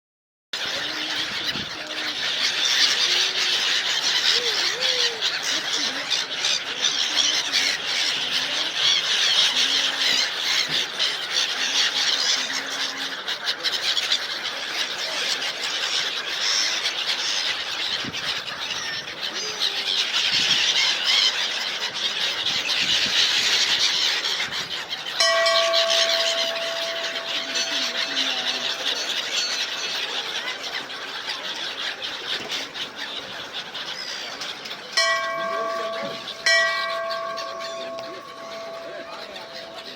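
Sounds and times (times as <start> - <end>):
flock of small birds chirping: 0.6 - 39.9
steady held tone: 25.2 - 29.8, 35.0 - 39.9.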